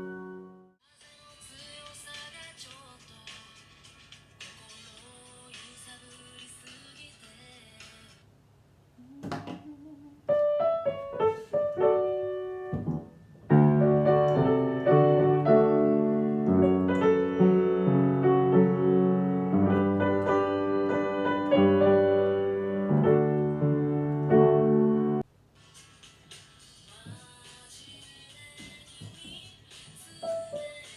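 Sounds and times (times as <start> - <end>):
piano melody and chords: 0.0 - 0.8, 10.3 - 25.2, 30.1 - 30.9.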